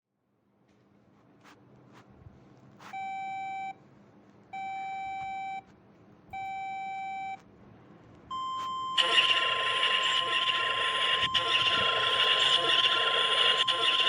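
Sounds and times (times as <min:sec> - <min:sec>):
electronic alarm beeps: 0:04.6 - 0:05.7, 0:06.4 - 0:07.4, 0:08.3 - 0:14.0.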